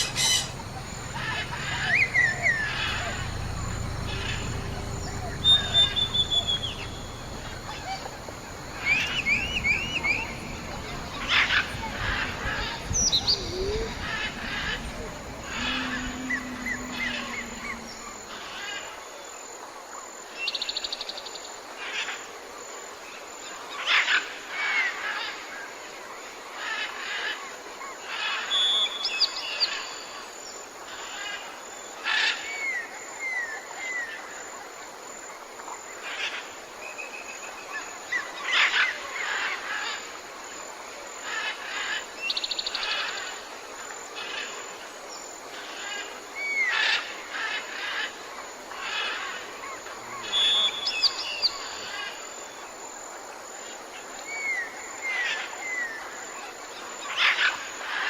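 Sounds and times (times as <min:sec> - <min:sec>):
birds chirping and singing: 0:00.0 - 0:18.2
steady background hiss: 0:00.0 - 0:58.0.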